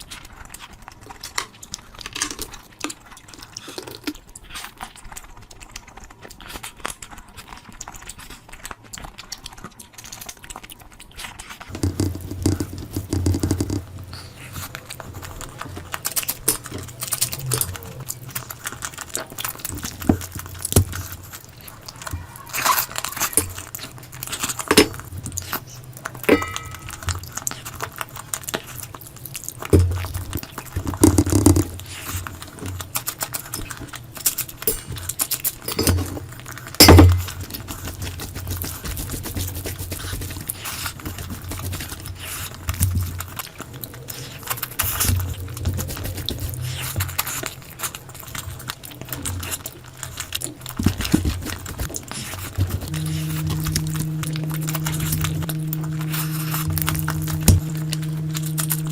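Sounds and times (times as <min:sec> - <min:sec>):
person chewing and smacking: 0:00.0 - 0:58.9.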